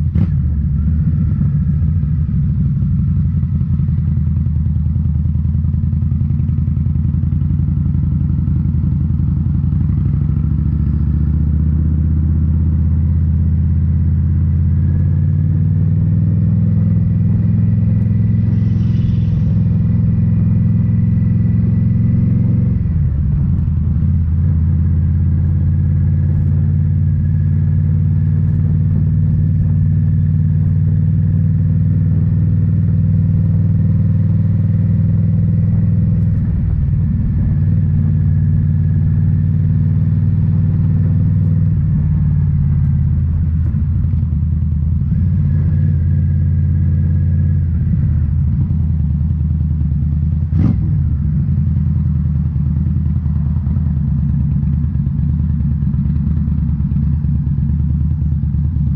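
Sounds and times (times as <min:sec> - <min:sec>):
motorcycle exhaust note: 0:00.0 - 0:58.9.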